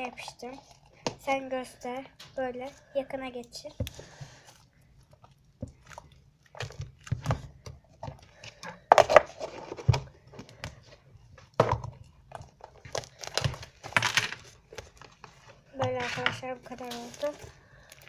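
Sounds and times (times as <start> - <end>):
slime clicking and rustling: 10.5 - 18.0.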